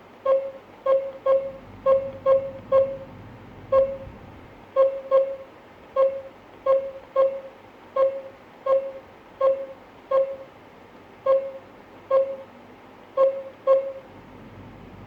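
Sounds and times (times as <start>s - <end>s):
alarm panel key-press beeps: 0.3s - 3.1s, 3.7s - 4.1s, 4.8s - 10.5s, 11.3s - 12.5s, 13.2s - 14.1s.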